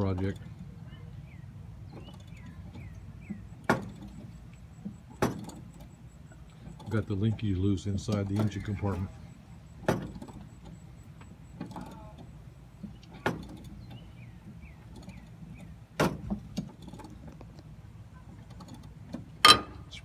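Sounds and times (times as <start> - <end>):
hand tools knocking on metal: 19.4 - 20.0.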